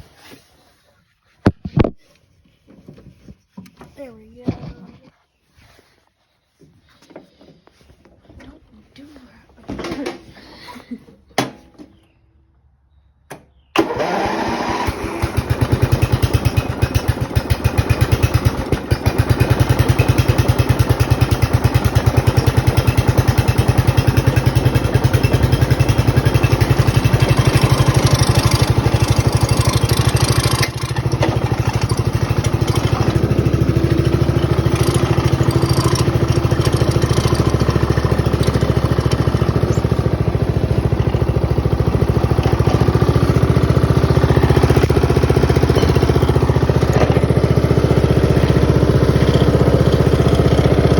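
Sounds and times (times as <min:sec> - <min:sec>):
lawn mower engine running: 0:09.6 - 0:10.7, 0:13.7 - 0:50.9.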